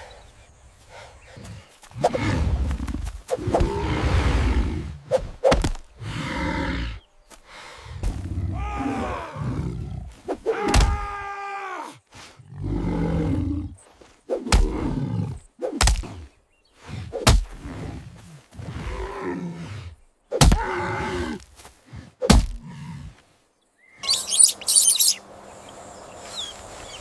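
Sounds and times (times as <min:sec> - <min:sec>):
animal growls and roars: 0:01.4 - 0:05.1, 0:06.0 - 0:07.0, 0:08.0 - 0:11.2, 0:12.4 - 0:13.8, 0:14.4 - 0:15.5, 0:16.9 - 0:23.2
pitched wavering animal call: 0:24.0 - 0:25.2.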